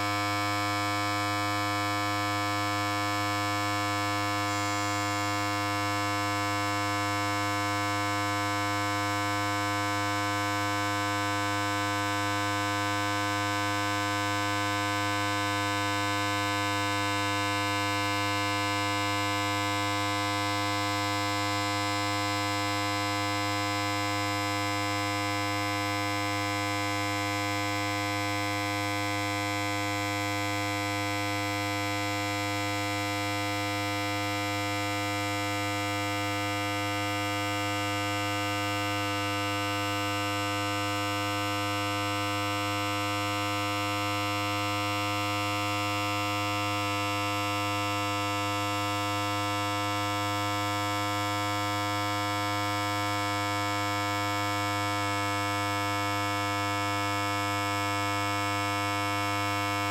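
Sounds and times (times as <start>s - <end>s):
electric hair clipper buzzing: 4.1s - 5.3s.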